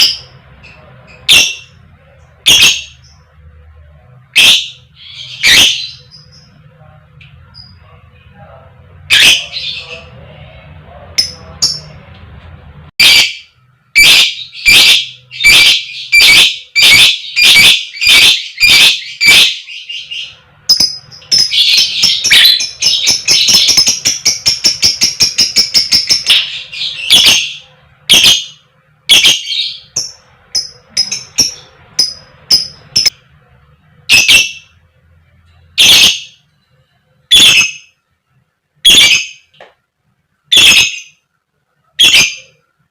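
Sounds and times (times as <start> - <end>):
lovebird giving sharp calls: 14.0 - 29.9, 35.8 - 36.3, 37.3 - 37.9, 38.8 - 39.4, 40.5 - 41.2, 42.0 - 42.5.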